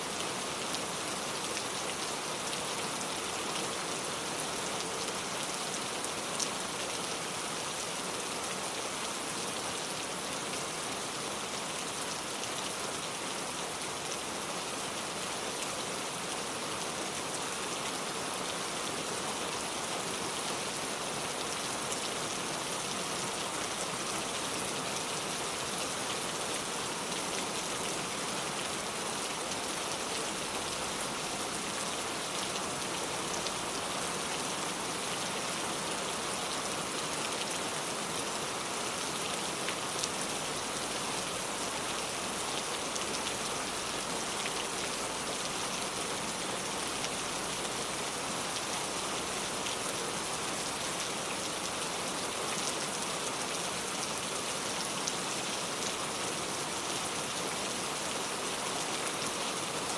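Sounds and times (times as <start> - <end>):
rain falling steadily: 0.0 - 59.9.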